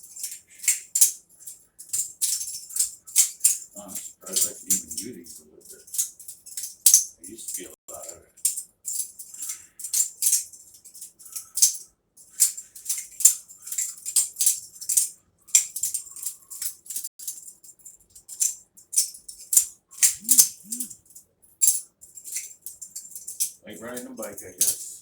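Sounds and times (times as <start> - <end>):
butterfly knife clacking: 19.5 - 21.0.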